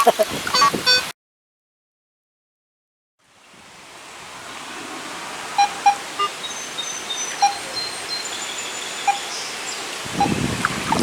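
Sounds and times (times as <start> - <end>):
metal detector short beeps: 0.0 - 1.1
river water rushing: 3.2 - 11.0.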